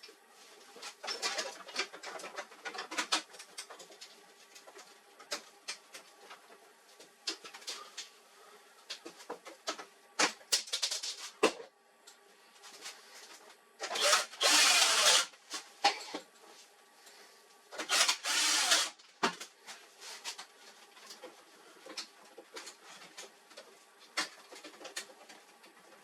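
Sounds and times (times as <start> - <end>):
clicks and knocks of parts: 0.8 - 8.1, 8.9 - 11.6.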